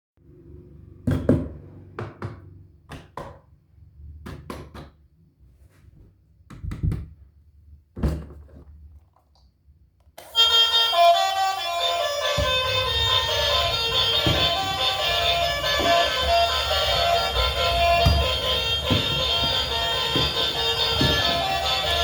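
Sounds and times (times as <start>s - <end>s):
knocks of objects handled: 12.3s - 22.0s.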